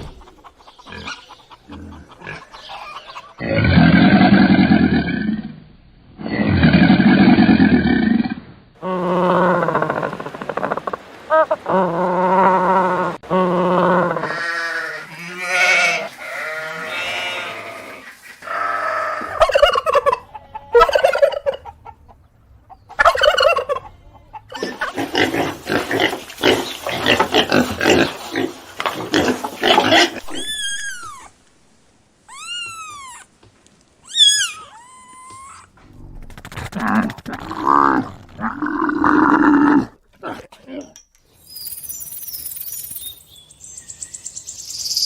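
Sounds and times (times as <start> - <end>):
poultry calling: 0.0 - 3.6, 14.2 - 31.3, 32.3 - 33.3, 34.0 - 35.8.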